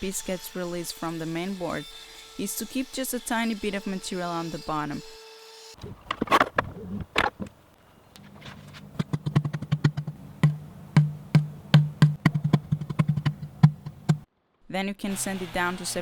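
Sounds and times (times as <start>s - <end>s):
background music with percussive beat: 9.2s - 14.2s.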